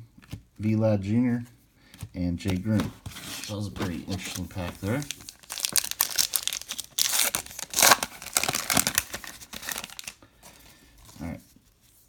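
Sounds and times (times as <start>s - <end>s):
foil wrapper crinkling and tearing: 3.4s - 10.2s.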